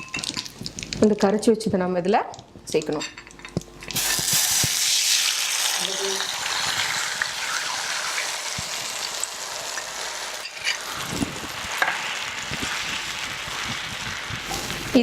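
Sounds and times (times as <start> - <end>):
paste sizzling in hot oil: 4.0 - 15.0.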